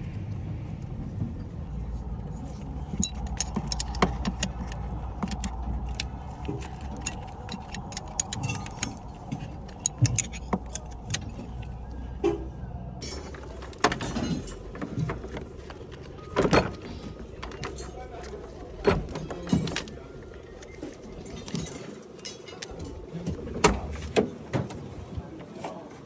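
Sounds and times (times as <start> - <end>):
low rumble: 0.0 - 19.2
metallic clicks and clinks: 1.7 - 12.3, 13.0 - 24.2.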